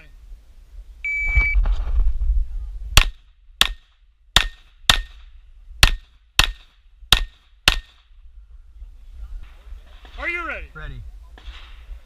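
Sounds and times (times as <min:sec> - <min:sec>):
pistol shots: 0:03.0 - 0:05.2.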